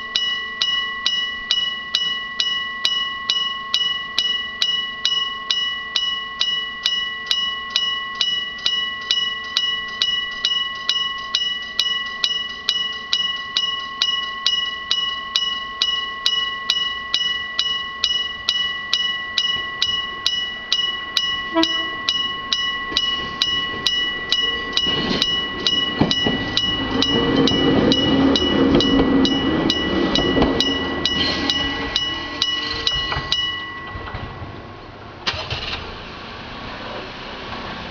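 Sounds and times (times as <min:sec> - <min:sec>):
level crossing bell ringing: 0:00.0 - 0:34.5
train wheels rumbling: 0:18.0 - 0:35.4.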